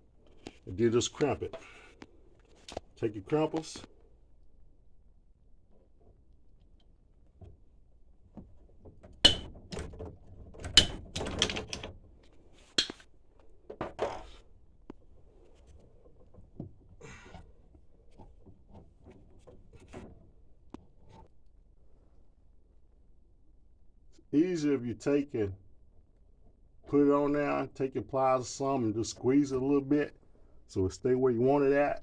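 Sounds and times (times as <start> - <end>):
crimping tool metallic clanks: 9.3 - 9.6.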